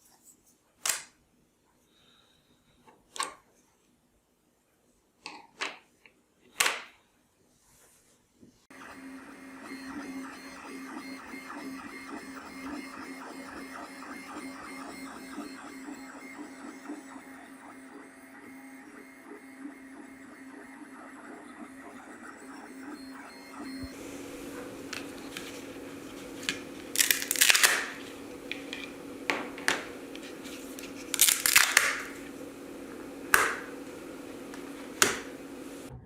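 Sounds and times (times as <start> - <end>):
stepper motors whirring and ticking: 8.7 - 24.0, 24.6 - 33.9.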